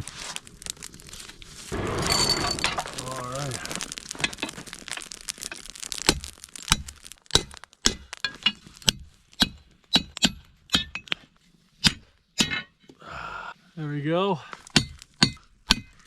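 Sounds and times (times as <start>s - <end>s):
dense crackle: 0.0s - 12.2s, 13.8s - 16.0s
hammer striking hot steel: 4.3s - 11.2s, 11.8s - 12.8s, 14.7s - 16.0s.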